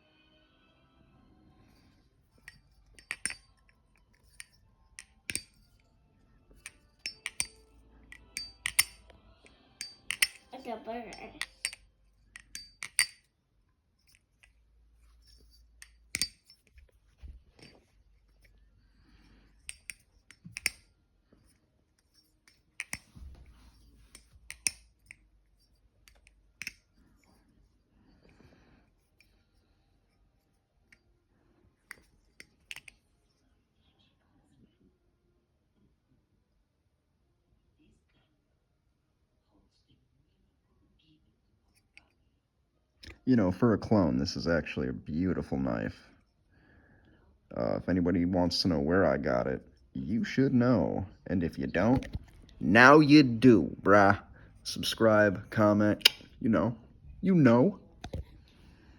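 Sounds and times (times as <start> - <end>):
butterfly knife clicking: 6.6 - 9.1, 9.8 - 11.8, 12.4 - 13.2, 15.2 - 16.7, 19.6 - 20.9, 24.1 - 25.2.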